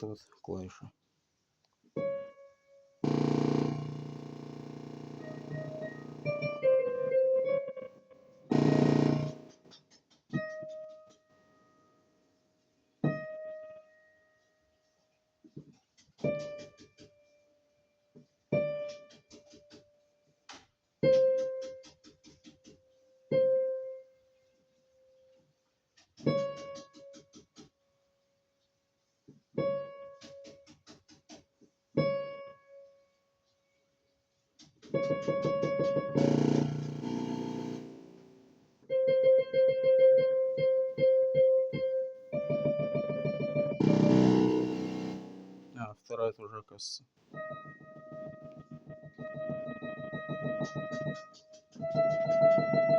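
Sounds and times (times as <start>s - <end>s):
piano notes with rattling buzz: 3.0s - 9.6s, 35.0s - 45.8s, 47.4s - 52.9s.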